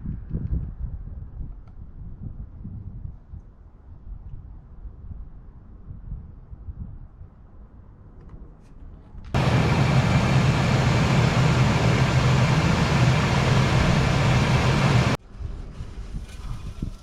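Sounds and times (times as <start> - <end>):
van engine running: 9.4 - 15.2.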